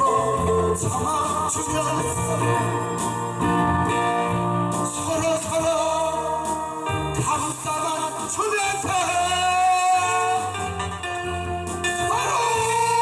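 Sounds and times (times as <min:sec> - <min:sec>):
two guitars playing a hymn melody: 0:00.0 - 0:13.0.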